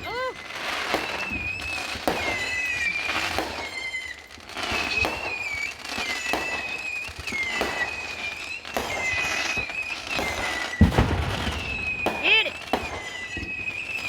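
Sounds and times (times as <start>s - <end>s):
fireworks bangs: 0.0s - 14.0s
fireworks whistling: 0.0s - 14.0s.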